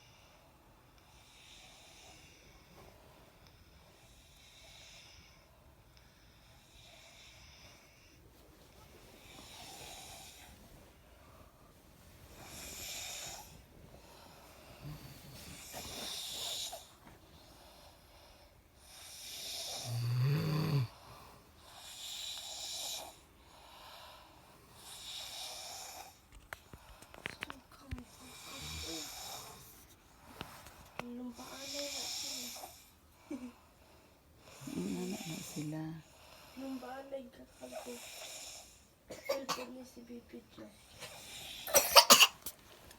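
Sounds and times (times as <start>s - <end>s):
people snoring: 12.4s - 17.0s, 18.9s - 23.2s, 28.2s - 29.7s, 31.3s - 33.7s, 34.4s - 38.9s.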